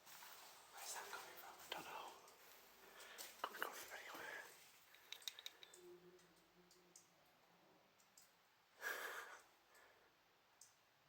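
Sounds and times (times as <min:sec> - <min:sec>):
faint low hum: 0:00.0 - 0:11.0
faint clicks: 0:01.0 - 0:04.3, 0:04.9 - 0:08.4, 0:10.6 - 0:10.8.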